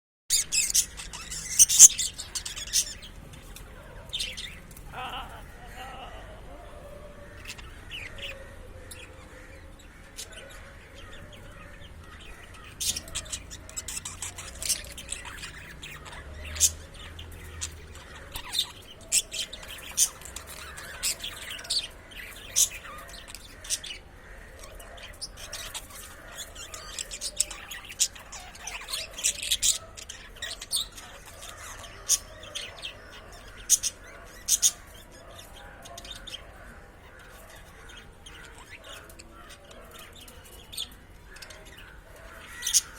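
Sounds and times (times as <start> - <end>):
budgerigar chirping: 0.3 - 3.2, 12.1 - 24.1.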